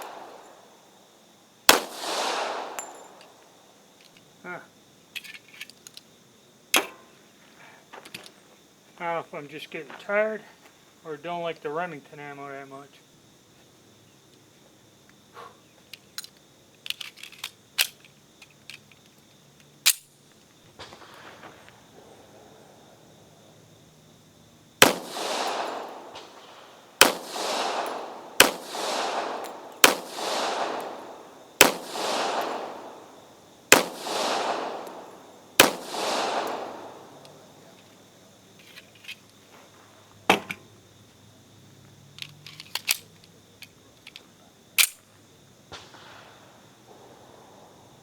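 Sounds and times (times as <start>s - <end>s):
pistol shots with echo: 0.0s - 0.8s, 1.7s - 3.4s, 24.8s - 37.6s
metallic pistol handling clicks: 19.8s - 20.1s, 42.1s - 44.2s, 44.8s - 45.0s.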